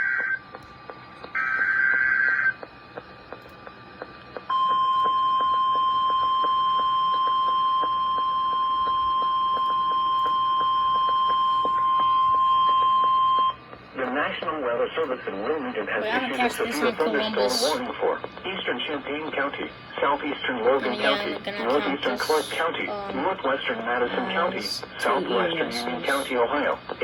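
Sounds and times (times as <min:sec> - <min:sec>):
ticking radio static: 0:00.0 - 0:09.3, 0:13.4 - 0:27.0
steady attention tone beep: 0:04.4 - 0:13.6.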